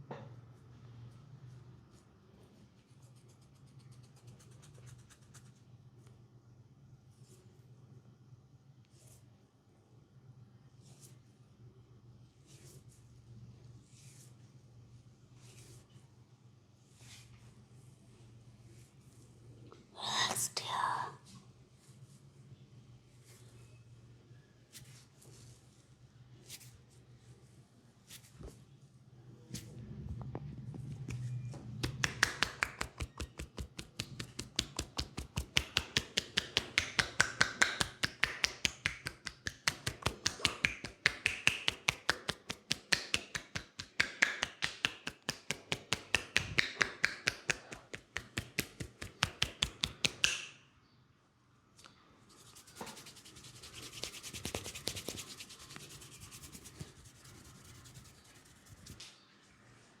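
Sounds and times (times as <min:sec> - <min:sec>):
hands rubbing hair and scalp: 0:02.8 - 0:05.7, 0:31.0 - 0:50.5, 0:52.3 - 0:59.1
hands slapping head: 0:31.8 - 0:50.6.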